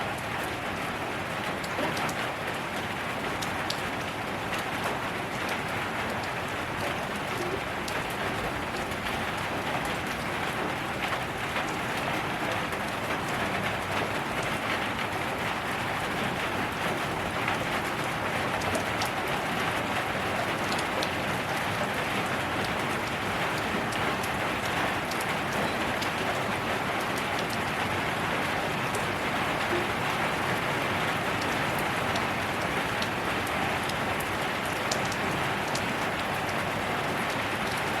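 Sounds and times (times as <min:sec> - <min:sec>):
rain hissing on a surface: 0:00.0 - 0:38.0
sharp raindrop ticks: 0:17.4 - 0:38.0.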